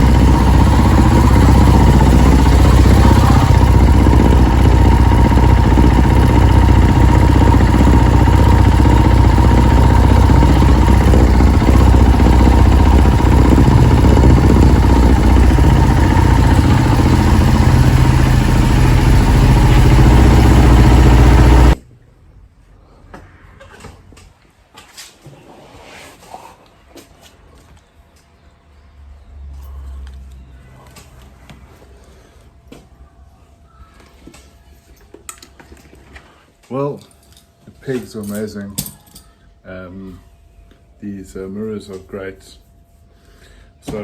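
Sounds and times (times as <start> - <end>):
dirt bike engine running: 0.0 - 21.8.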